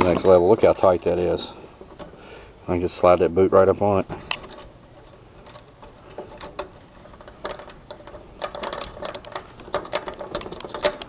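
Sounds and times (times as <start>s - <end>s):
crimping tool clicks and rattles: 4.3s - 11.0s.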